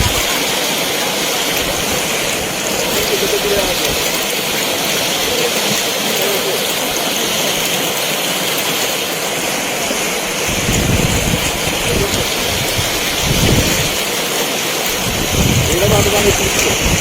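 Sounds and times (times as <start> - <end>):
wind buffeting microphone: 0.0 - 0.6, 9.9 - 14.2, 14.8 - 17.0
water rushing: 0.0 - 17.0.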